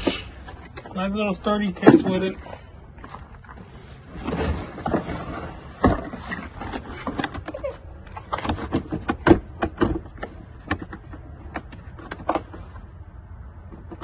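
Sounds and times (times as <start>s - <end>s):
tool case clicks and knocks: 8.3s - 12.6s.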